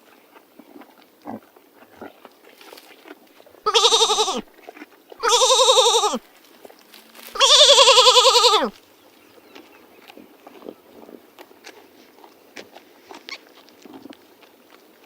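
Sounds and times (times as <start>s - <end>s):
goat bleating: 3.6s - 4.5s, 5.2s - 6.2s, 7.2s - 8.8s.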